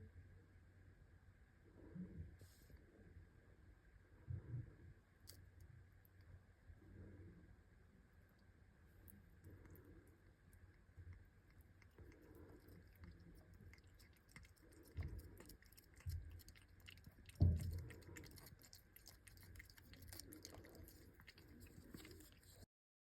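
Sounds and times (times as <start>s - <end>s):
kitten chewing food: 5.3s - 7.2s, 8.0s - 22.7s.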